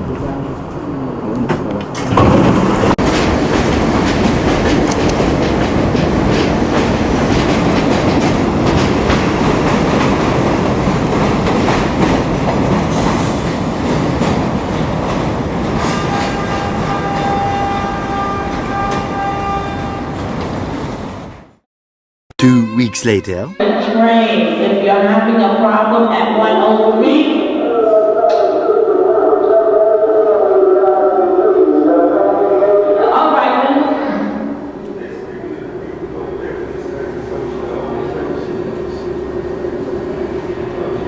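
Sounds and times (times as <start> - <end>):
subway train wheels clacking: 0.0 - 21.6, 24.3 - 41.0
high-pitched tone: 22.3 - 23.7.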